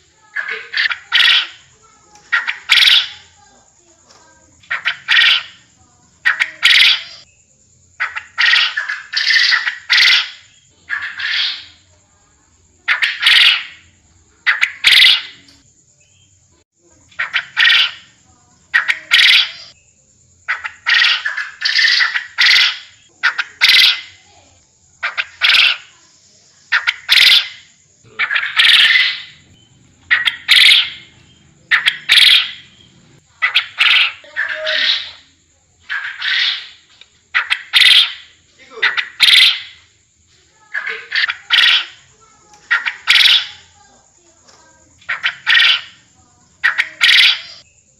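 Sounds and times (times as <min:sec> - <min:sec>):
quail calling in harsh calls: 0:00.0 - 0:03.4, 0:04.6 - 0:07.3, 0:08.0 - 0:11.8, 0:12.8 - 0:15.6, 0:17.1 - 0:19.8, 0:20.5 - 0:24.2, 0:25.0 - 0:26.0, 0:26.7 - 0:32.8, 0:33.4 - 0:39.9, 0:40.7 - 0:43.8, 0:45.0 - 0:47.7.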